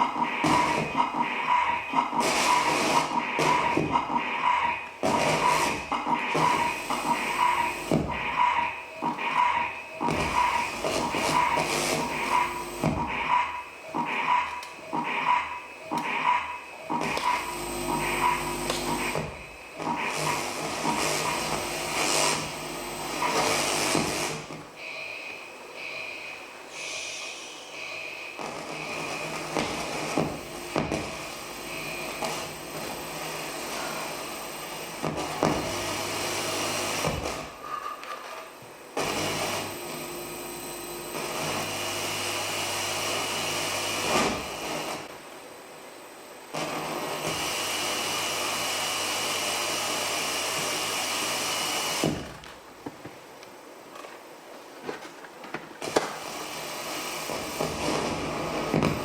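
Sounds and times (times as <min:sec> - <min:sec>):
grinding experimental drones: 0:00.0 - 0:24.4.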